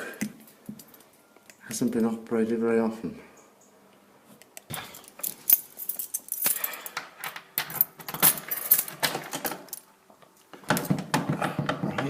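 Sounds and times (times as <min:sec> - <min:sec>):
small metal pieces clinking: 0:04.9 - 0:09.9.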